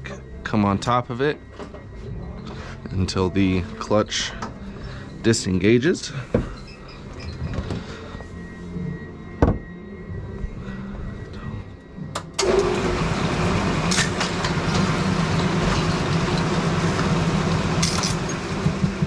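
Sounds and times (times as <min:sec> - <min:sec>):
pinsetter machine humming: 0:12.4 - 0:19.0.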